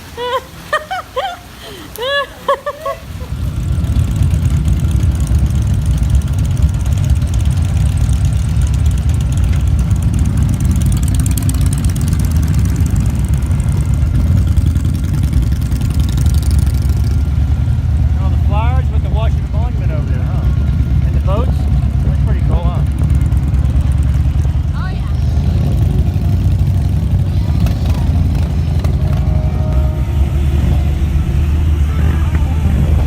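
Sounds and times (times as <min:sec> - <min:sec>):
vehicle engine rumbling: 0:00.0 - 0:33.0.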